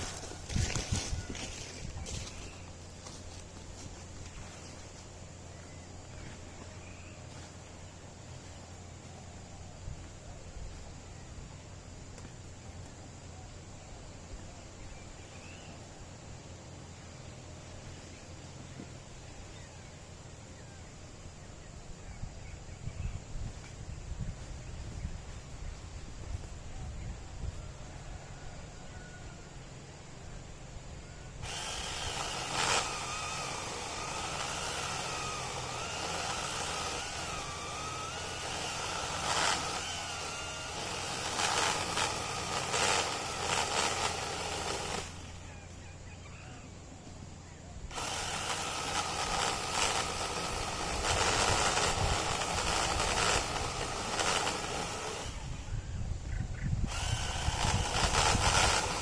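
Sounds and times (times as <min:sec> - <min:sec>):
electric chainsaw cutting branch: 0:00.0 - 0:05.0, 0:31.4 - 0:45.5, 0:47.9 - 0:55.8, 0:56.8 - 0:59.0.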